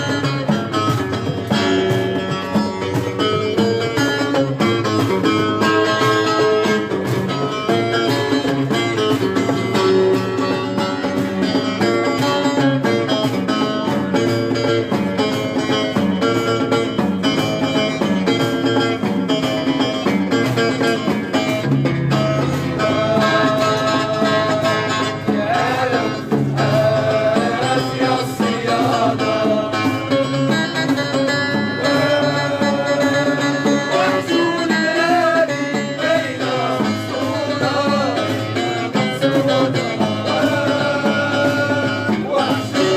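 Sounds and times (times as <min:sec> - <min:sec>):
plucked string instruments: 0:00.0 - 0:42.9
rhythmic bass pattern: 0:00.0 - 0:42.9.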